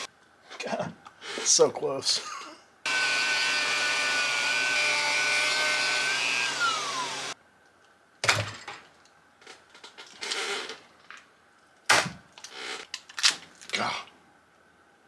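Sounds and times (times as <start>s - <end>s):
power tool cutting: 2.9s - 7.4s.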